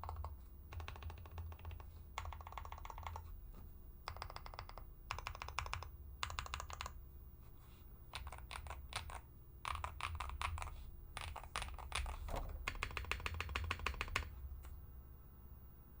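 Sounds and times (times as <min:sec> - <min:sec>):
mechanical keyboard typing: 0:00.0 - 0:03.3, 0:04.1 - 0:07.0, 0:08.1 - 0:14.3.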